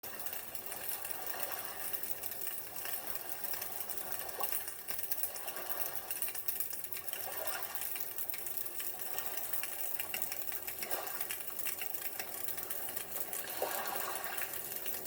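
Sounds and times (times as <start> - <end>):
campfire crackling: 0.0 - 15.0.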